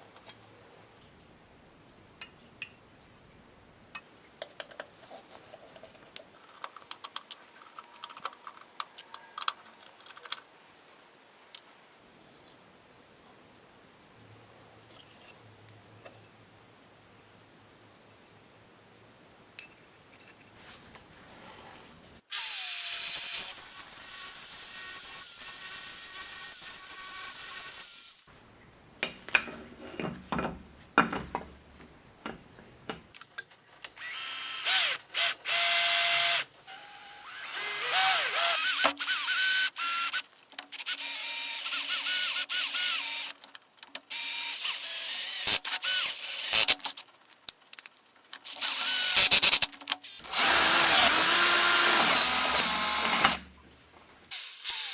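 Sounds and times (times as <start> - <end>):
clicks and handling knocks: 29.0 - 34.0
power drill whine: 34.0 - 40.2, 48.5 - 53.4, 54.3 - 54.9.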